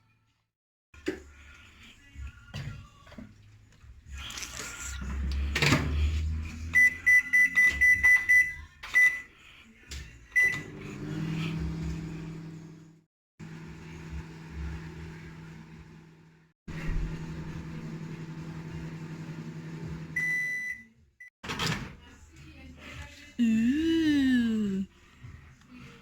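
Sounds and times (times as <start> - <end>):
microwave keypad beeps: 6.8 - 9.3, 10.4 - 10.7, 20.2 - 20.9
microwave oven humming: 10.4 - 20.9.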